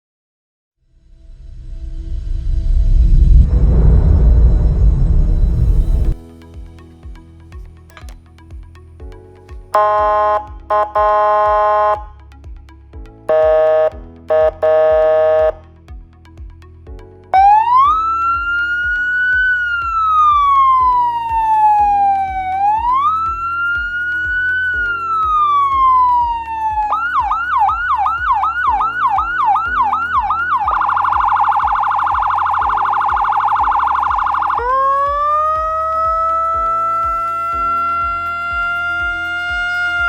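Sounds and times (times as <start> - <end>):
soft background music beat: 5.3 - 40.0
police siren: 9.8 - 12.1, 13.3 - 15.6, 17.4 - 40.0.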